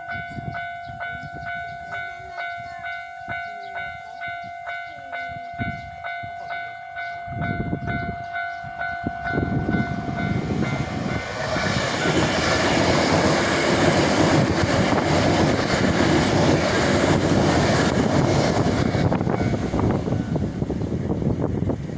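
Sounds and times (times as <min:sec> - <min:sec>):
electric train rumbling past: 0:00.0 - 0:21.9
train wheels clacking: 0:07.9 - 0:20.5.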